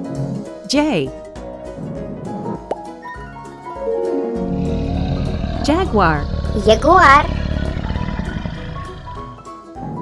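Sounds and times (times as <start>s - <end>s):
low rumble: 4.5s - 9.3s.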